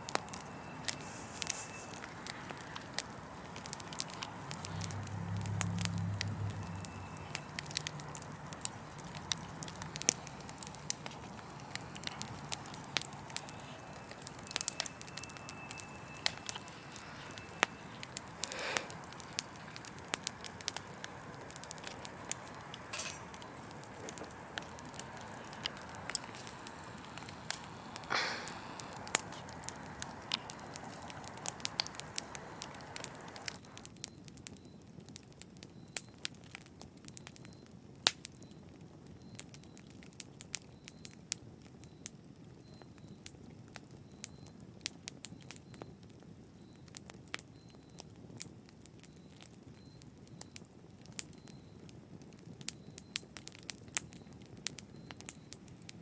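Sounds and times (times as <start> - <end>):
steady hiss: 0.0 - 33.8
wood fire crackling and popping: 0.0 - 56.0.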